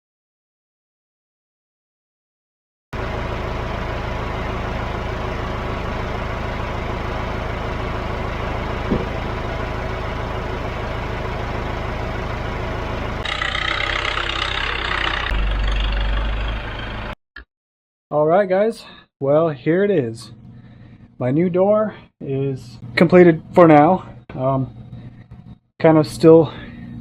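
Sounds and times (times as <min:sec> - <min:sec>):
engine idling: 0:03.0 - 0:17.2
low hum: 0:03.0 - 0:17.2.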